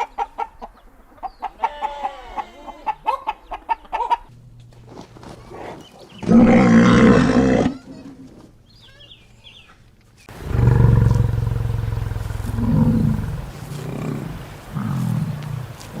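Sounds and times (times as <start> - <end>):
large animal deep call: 10.3 - 16.0.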